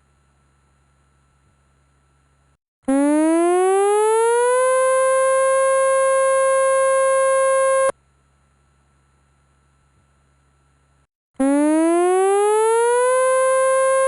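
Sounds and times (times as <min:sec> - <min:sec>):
electronic warning siren: 0:02.9 - 0:08.0, 0:11.4 - 0:14.0.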